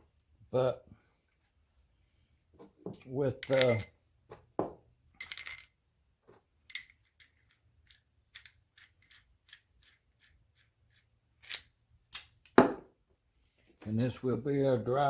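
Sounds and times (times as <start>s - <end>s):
small metal parts clinking: 3.4s - 4.0s, 5.2s - 5.8s, 6.7s - 12.7s.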